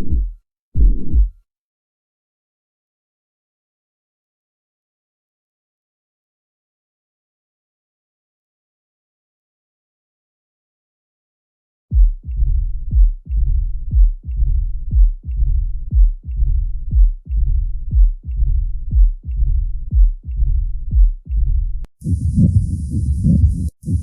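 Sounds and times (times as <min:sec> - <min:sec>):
heart murmur: 0:00.0 - 0:01.4, 0:11.9 - 0:24.0
heartbeat thuds: 0:00.0 - 0:01.4, 0:11.9 - 0:24.0.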